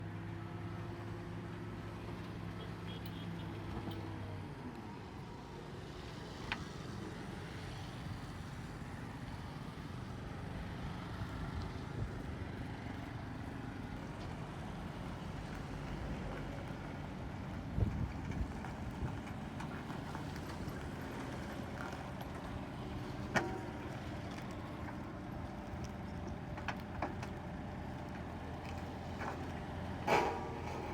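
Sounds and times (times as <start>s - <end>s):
heavy diesel engine running: 20.5s - 30.9s.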